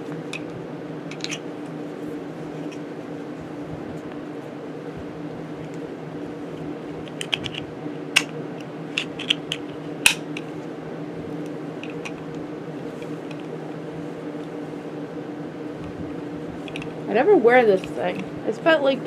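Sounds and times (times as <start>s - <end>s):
steady low hum: 0.0s - 19.0s
objects clicking and tapping: 1.1s - 1.4s, 6.9s - 7.6s, 9.0s - 10.5s.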